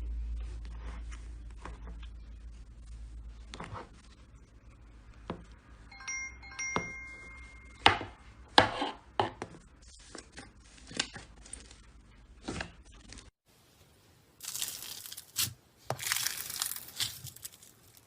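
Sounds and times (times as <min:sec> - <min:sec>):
brief chime-like ringing tone: 0:05.9 - 0:08.1.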